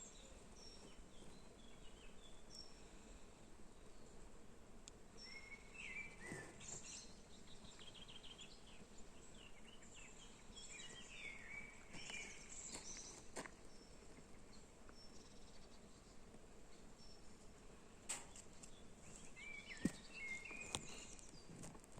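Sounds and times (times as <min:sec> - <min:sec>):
birds chirping and singing: 0:05.2 - 0:13.2, 0:18.7 - 0:21.5.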